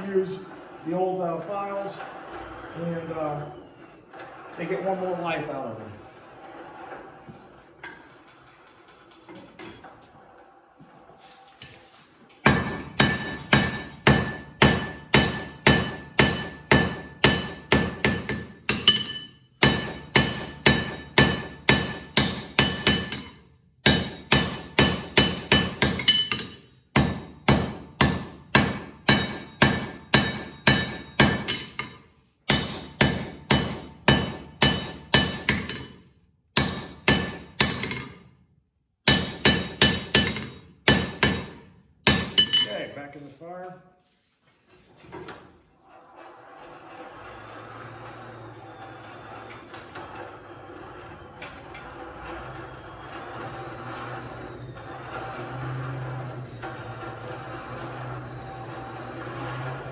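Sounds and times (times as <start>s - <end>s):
hammer striking steel on an anvil: 12.4s - 36.0s, 36.6s - 38.3s, 39.0s - 43.1s.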